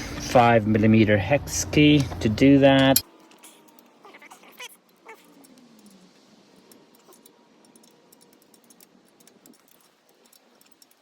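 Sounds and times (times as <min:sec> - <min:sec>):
hex key clicking on bolts: 0:06.6 - 0:11.0.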